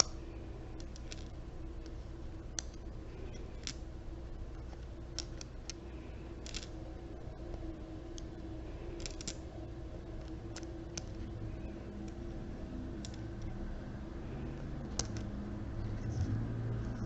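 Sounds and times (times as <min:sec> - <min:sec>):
dominoes clicking together: 0:00.8 - 0:02.8, 0:03.4 - 0:03.8, 0:05.1 - 0:05.8, 0:06.4 - 0:06.8, 0:08.9 - 0:09.5, 0:14.9 - 0:15.3.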